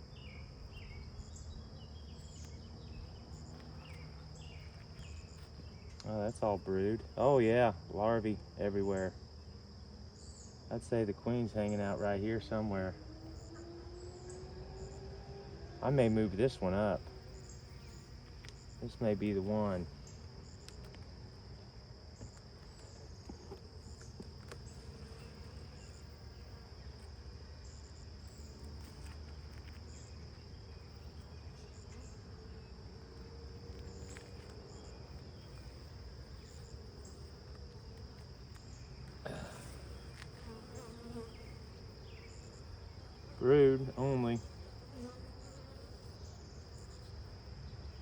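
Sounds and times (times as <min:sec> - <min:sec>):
bees buzzing: 0:23.3 - 0:46.2.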